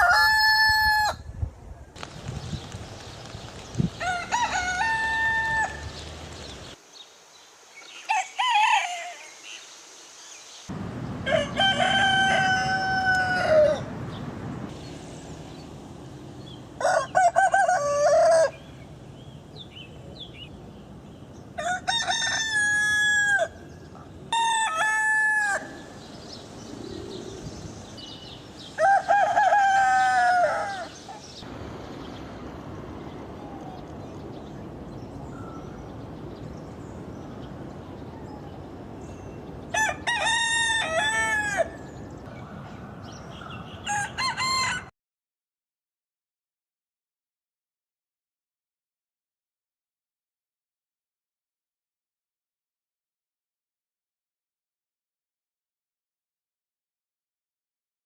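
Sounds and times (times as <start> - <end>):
roosters crowing: 0.0 - 1.3, 3.9 - 6.7, 8.0 - 9.4, 11.1 - 14.0, 16.8 - 18.8, 21.6 - 23.7, 24.3 - 26.2, 28.2 - 31.5, 39.6 - 42.2, 43.7 - 44.9.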